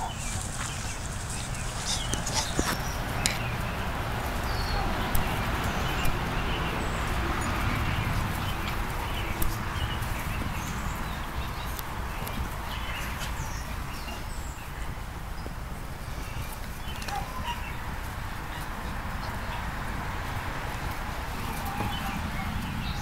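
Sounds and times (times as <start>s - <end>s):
high animal chirps and squeaks: 0.0s - 3.0s
steady rushing hiss: 0.0s - 16.9s.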